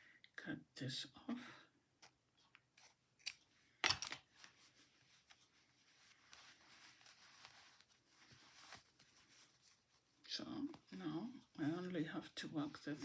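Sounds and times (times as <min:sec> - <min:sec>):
yarn rustling: 0:04.3 - 0:13.0.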